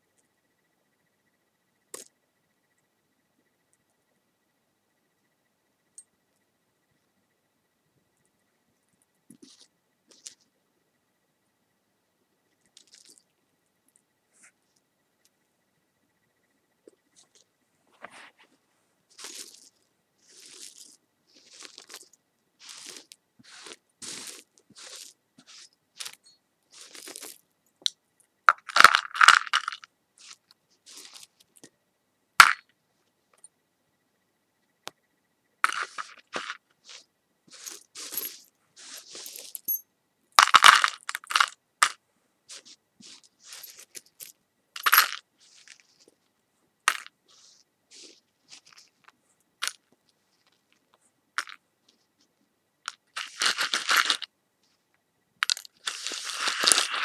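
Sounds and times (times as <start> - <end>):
handling crunches and scrapes: 9.3 - 10.5, 12.6 - 13.2, 16.9 - 27.9, 28.5 - 31.7, 35.6 - 39.8, 40.4 - 46.3, 46.9 - 52.3, 52.9 - 54.8, 55.4 - 57.0.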